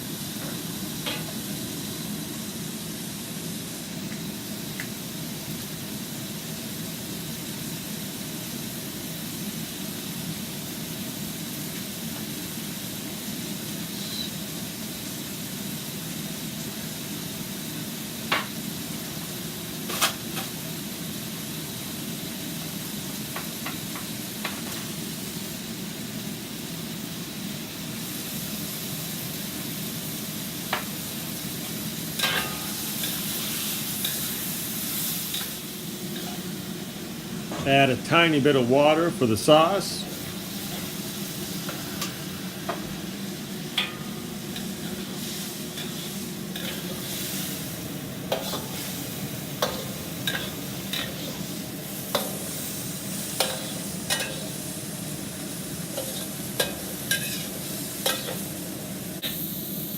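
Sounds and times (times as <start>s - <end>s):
food sizzling in a wok: 0.0s - 37.6s, 38.2s - 59.9s
utensil clicking on wok: 49.6s - 52.4s.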